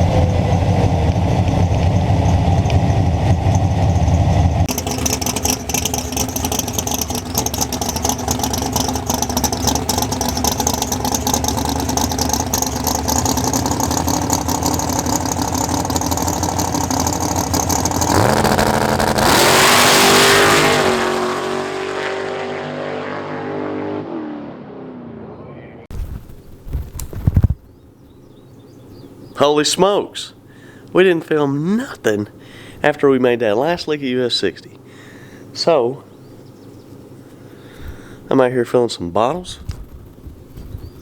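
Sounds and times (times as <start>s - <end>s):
drag racing engine revving: 0.0s - 25.1s.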